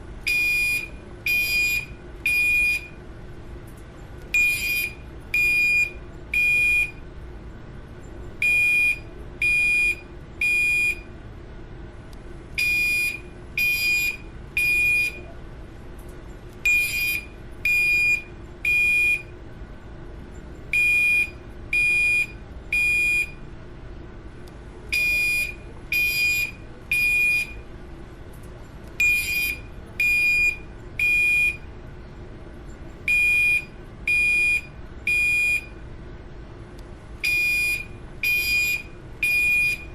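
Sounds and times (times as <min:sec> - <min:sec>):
fire alarm beeps: 0:00.3 - 0:03.0, 0:04.3 - 0:07.0, 0:08.4 - 0:11.1, 0:12.6 - 0:15.3, 0:16.6 - 0:19.3, 0:20.7 - 0:23.4, 0:24.9 - 0:27.7, 0:29.0 - 0:31.7, 0:33.0 - 0:35.8, 0:37.2 - 0:39.9.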